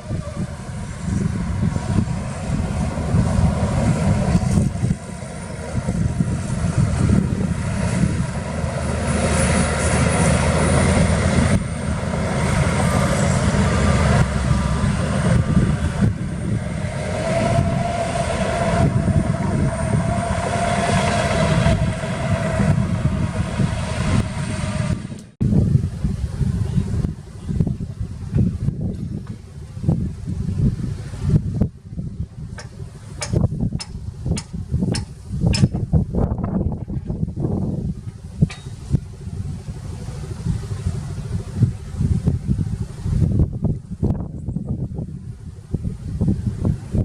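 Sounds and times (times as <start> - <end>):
machinery whine: 0.0 - 28.4
heavy diesel machinery rumbling: 0.0 - 47.0
sharp metal clanks: 38.5 - 38.8.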